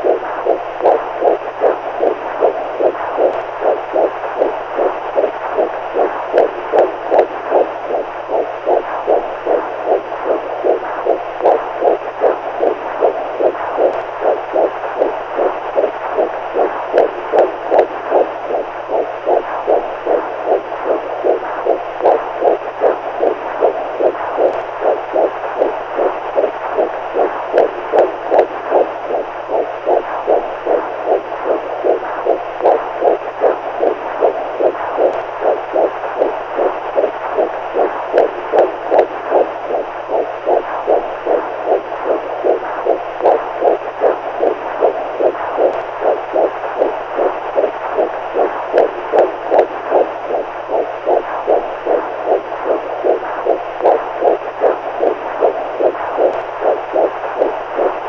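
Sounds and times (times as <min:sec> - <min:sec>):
faint low hum: 0:00.0 - 0:58.0
heartbeat pulsing: 0:00.0 - 0:58.0.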